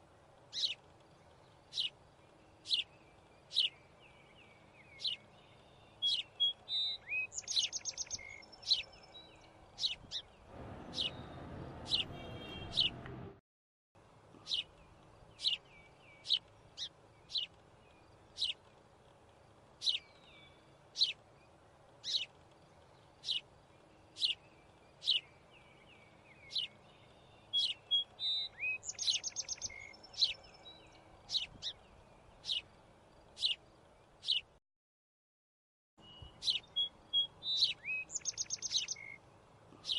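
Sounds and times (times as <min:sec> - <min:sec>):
small birds chirping: 0:00.0 - 0:13.3, 0:14.2 - 0:34.6, 0:36.0 - 0:39.9
rushing noise: 0:10.5 - 0:13.4.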